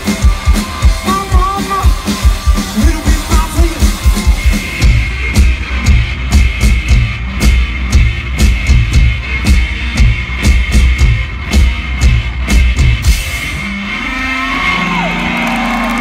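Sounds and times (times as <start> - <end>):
heavy kick drum beat: 0.0 - 13.4
live rock band playing: 0.0 - 16.0.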